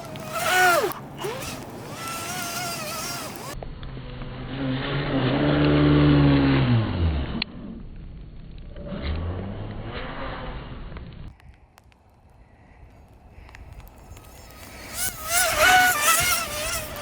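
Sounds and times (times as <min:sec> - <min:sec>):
rc car motor revving: 0:00.0 - 0:03.6, 0:14.4 - 0:17.0.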